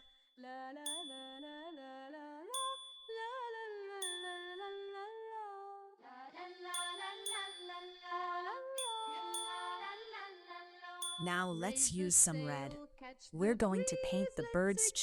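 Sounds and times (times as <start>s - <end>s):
light bell-like dings: 0.0s - 0.2s, 0.9s - 5.2s, 6.8s - 12.2s.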